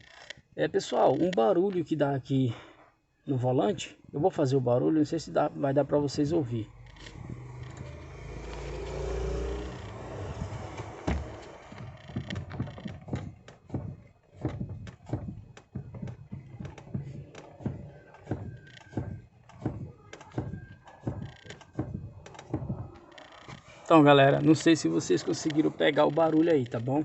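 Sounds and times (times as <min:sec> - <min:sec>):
steering column knocking: 0:06.1 - 0:23.6.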